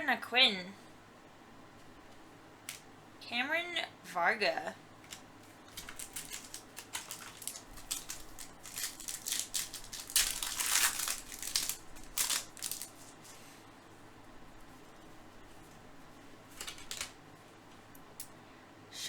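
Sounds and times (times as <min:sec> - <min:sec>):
cards being flipped: 0:05.0 - 0:13.4, 0:16.5 - 0:17.2.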